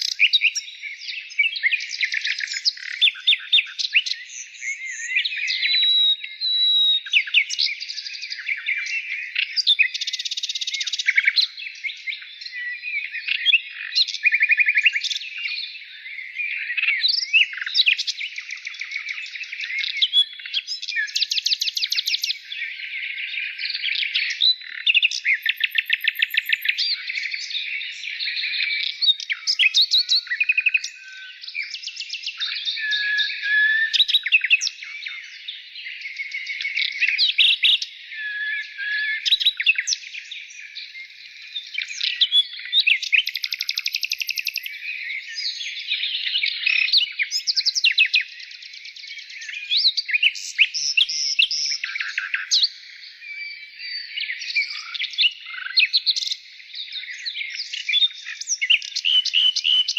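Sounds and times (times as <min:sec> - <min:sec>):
birds chirping and trilling: 0:00.0 - 0:59.9.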